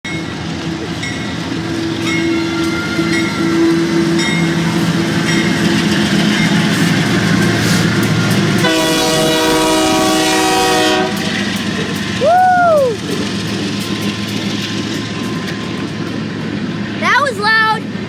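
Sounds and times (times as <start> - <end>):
train rumbling with wheel clicks: 0.0 - 18.0
train air horn chord: 8.6 - 11.4.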